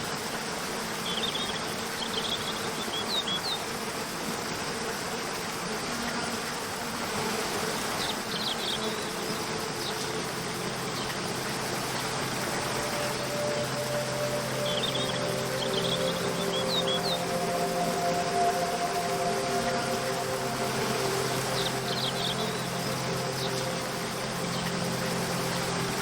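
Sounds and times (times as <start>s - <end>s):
soft background music: 6.7s - 26.0s
waterfall rushing: 6.9s - 26.0s.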